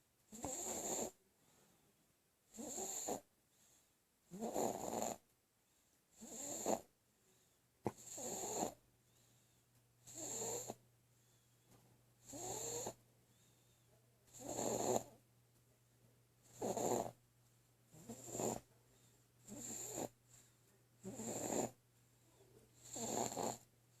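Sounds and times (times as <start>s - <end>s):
baby snoring: 0.3s - 1.2s, 2.5s - 3.3s, 4.3s - 5.2s, 6.2s - 6.9s, 7.9s - 8.8s, 10.1s - 10.8s, 12.2s - 13.0s, 14.3s - 15.2s, 16.5s - 17.2s, 18.0s - 18.7s, 19.4s - 20.2s, 21.0s - 21.8s, 22.8s - 23.6s.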